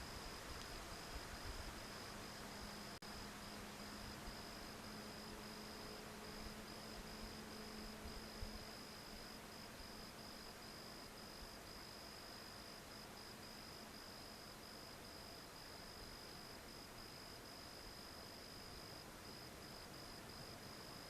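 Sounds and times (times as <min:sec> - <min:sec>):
wind noise on microphone: 0:00.0 - 0:02.1
faint low hum: 0:00.0 - 0:21.0.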